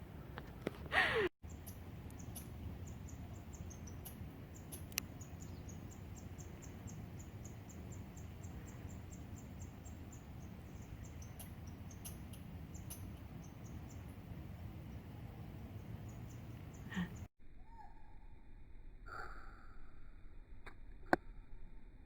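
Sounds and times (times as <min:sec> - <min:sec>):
low outdoor rumble: 0:00.0 - 0:22.0.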